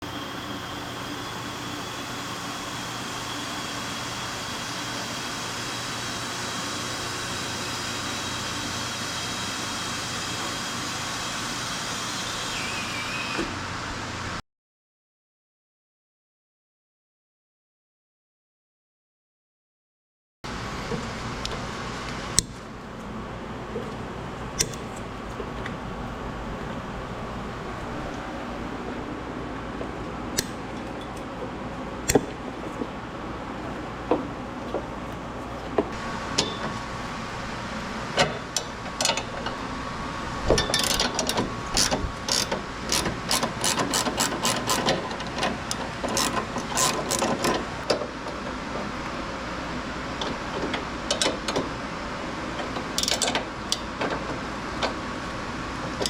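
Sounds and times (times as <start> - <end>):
steady background hum: 20.5 - 56.0
hand tools clicking and knocking: 40.6 - 48.1, 52.7 - 54.3.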